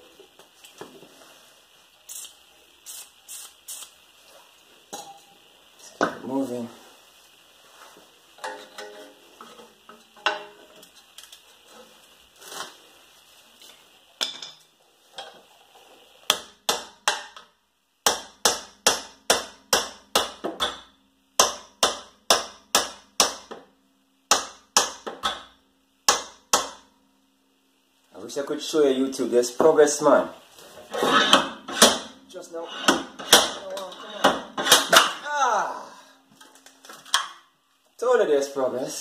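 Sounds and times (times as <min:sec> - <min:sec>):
hammer striking metal: 0:18.0 - 0:23.6, 0:24.3 - 0:25.5, 0:26.1 - 0:26.8, 0:32.7 - 0:33.6.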